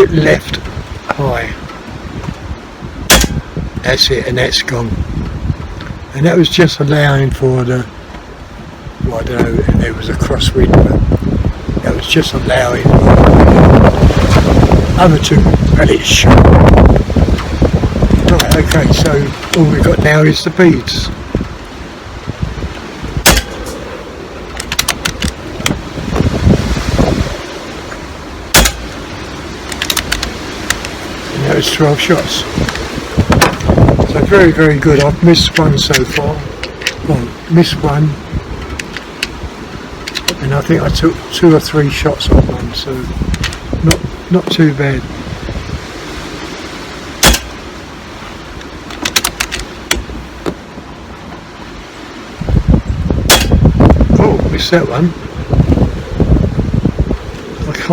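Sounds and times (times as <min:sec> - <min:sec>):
wind rumbling on microphone: 0:00.0 - 0:57.9
air rifle shots: 0:03.1 - 0:03.4, 0:23.2 - 0:24.0, 0:28.5 - 0:29.1, 0:47.2 - 0:47.6, 0:53.3 - 0:53.7.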